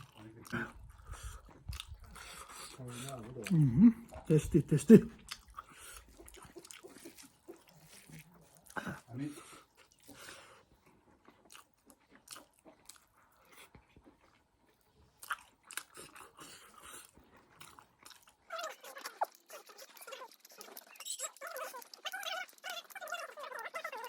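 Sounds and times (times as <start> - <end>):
wet mouth clicks: 0.0 - 9.0, 15.2 - 24.0
chewing and biting food: 0.0 - 24.0.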